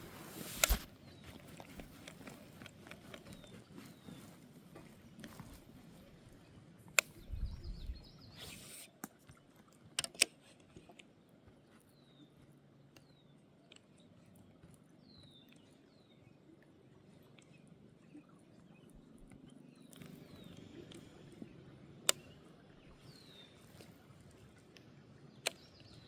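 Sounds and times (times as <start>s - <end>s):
rustling handling noise: 0.0s - 6.4s
sharp clicks: 0.4s - 0.9s, 10.0s - 10.7s
bird chirping: 7.0s - 9.0s, 17.4s - 24.2s.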